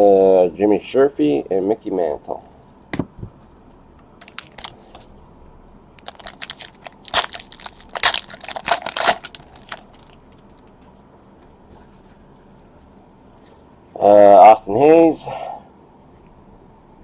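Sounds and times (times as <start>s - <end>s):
plastic packaging crinkling: 4.2s - 5.1s, 6.0s - 10.8s.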